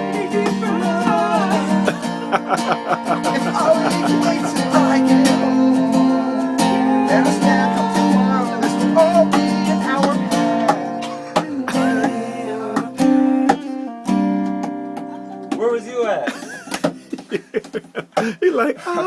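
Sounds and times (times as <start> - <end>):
wavering melody line: 0.0 - 10.6
guitar strumming chords: 0.0 - 15.8.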